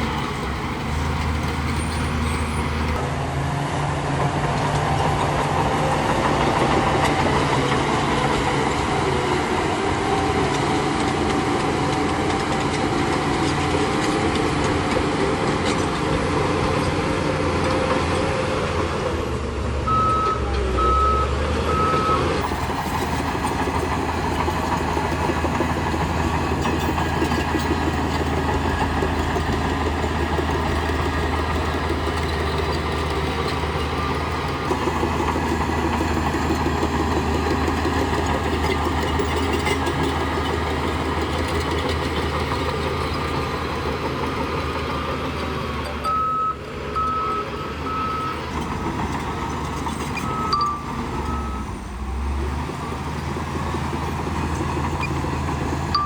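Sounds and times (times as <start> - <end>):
bulldozer diesel engine running: 0.0 - 56.0
reversing alarm beeping: 19.9 - 23.8, 46.0 - 48.5, 50.1 - 52.0.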